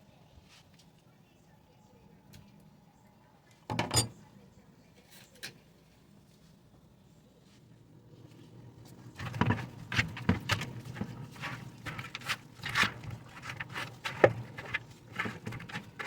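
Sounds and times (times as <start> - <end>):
irregular knocks and clatters: 9.1 - 16.0.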